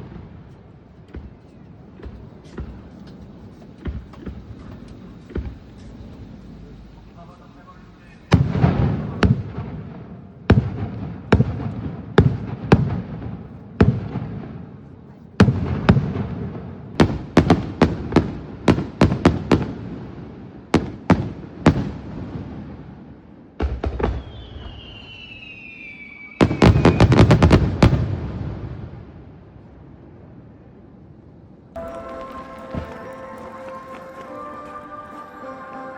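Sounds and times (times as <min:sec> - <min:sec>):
fireworks bangs with rumble: 0:00.0 - 0:07.2, 0:08.2 - 0:29.9, 0:31.8 - 0:34.2
falling firework whistle: 0:23.9 - 0:27.6, 0:31.8 - 0:35.9.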